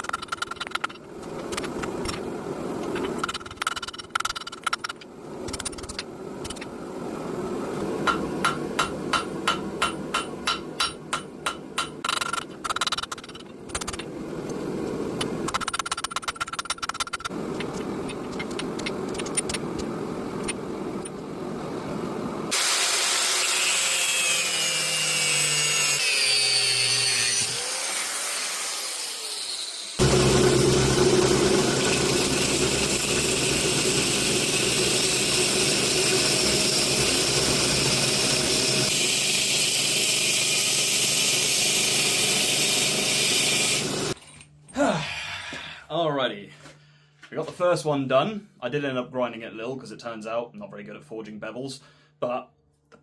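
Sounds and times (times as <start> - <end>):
hammer blows on anvil: 8.0 - 12.0.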